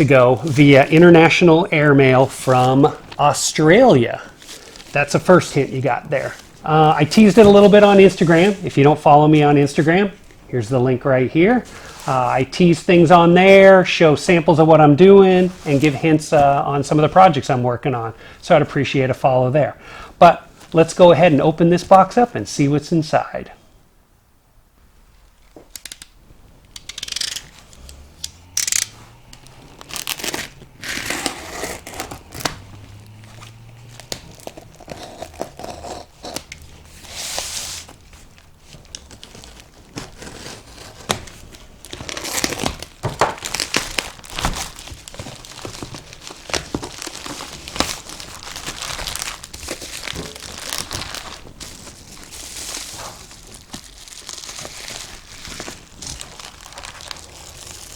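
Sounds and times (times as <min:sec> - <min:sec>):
packing material rustling: 0:00.0 - 0:10.4, 0:11.4 - 0:12.8, 0:25.4 - 0:57.9
packing tape tearing: 0:25.7 - 0:38.0, 0:38.9 - 0:57.9.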